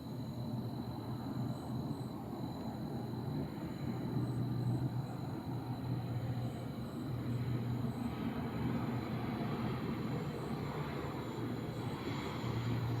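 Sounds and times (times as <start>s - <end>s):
aeroplane flying overhead: 0.0s - 13.0s.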